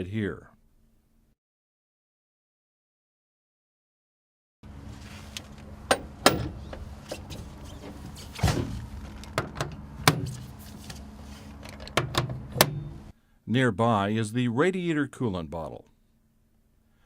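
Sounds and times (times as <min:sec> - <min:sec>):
steady low hum: 0:04.6 - 0:13.5.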